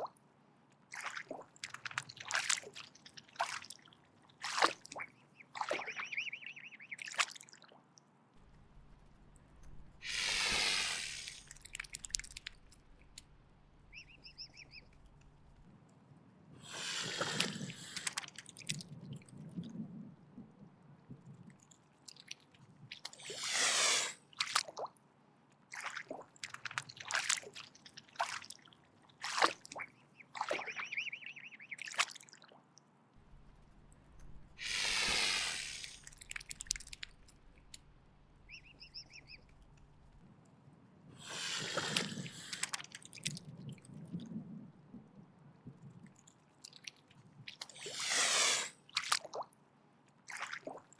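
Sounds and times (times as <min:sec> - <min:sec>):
swan hissing: 0:08.5 - 0:13.3, 0:16.6 - 0:18.2, 0:23.2 - 0:24.3, 0:33.3 - 0:39.6, 0:41.2 - 0:42.8, 0:47.7 - 0:48.8.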